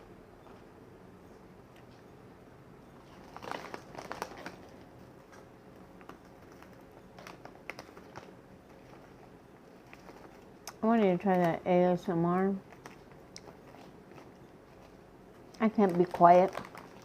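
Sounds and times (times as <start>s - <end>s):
snack bag crinkling: 3.0s - 11.6s, 12.6s - 17.0s.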